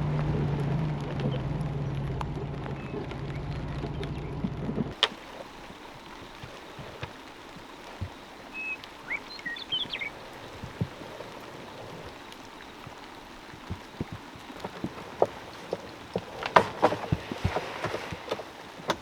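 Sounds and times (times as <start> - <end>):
rain falling: 4.9 - 19.0
drops tapping: 5.0 - 19.0.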